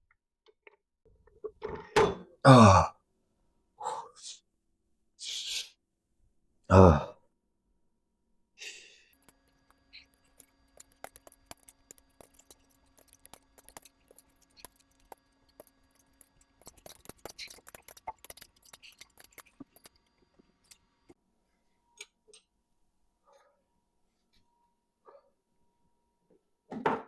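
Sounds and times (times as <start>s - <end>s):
small metal parts clinking: 9.1s - 21.0s.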